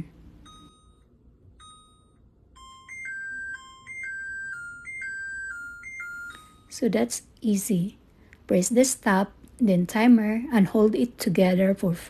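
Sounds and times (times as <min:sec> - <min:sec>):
microwave beeps: 0:00.0 - 0:06.7
stepped beep melody: 0:00.4 - 0:06.8.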